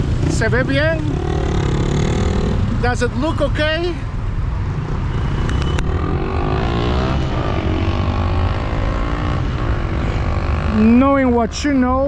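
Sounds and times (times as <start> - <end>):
street traffic rumble: 0.0 - 12.0
vehicle pulling past: 5.2 - 10.7.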